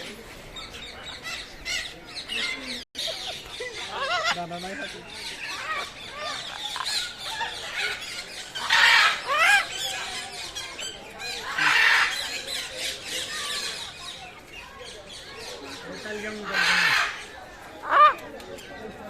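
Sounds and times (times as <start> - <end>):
parakeets chirping and whistling: 4.0 - 13.9
parakeet harsh screeches: 8.6 - 9.7.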